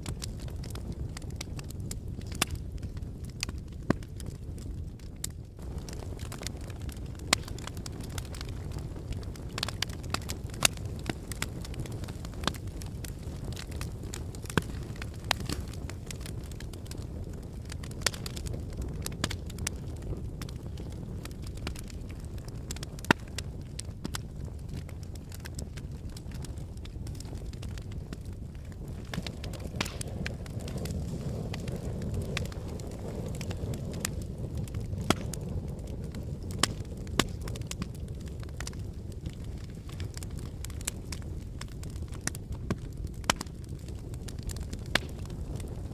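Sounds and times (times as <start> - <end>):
flames rumbling: 0.0 - 45.9
wood fire crackling: 0.0 - 45.9.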